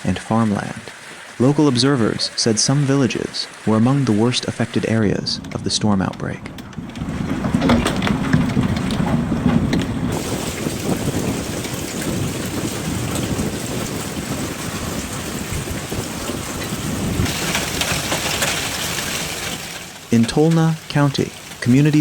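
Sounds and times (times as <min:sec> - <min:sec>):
low thunder rumble: 0:06.3 - 0:20.0
hail and heavy rain pounding: 0:07.0 - 0:22.0.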